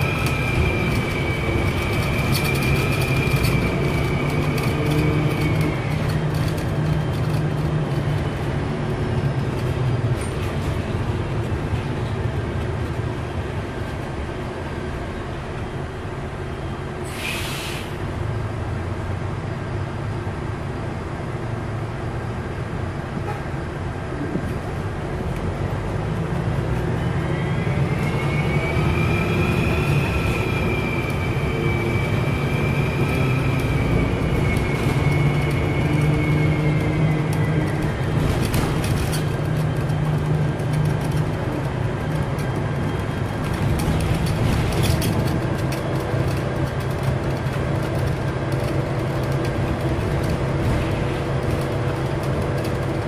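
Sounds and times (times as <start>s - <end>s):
bus diesel engine drone: 0.0s - 53.0s
turbocharger whistle: 27.0s - 37.2s.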